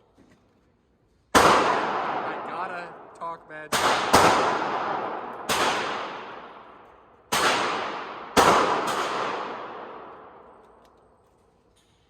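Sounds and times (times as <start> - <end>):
pistol shots echoing: 1.3 - 10.8.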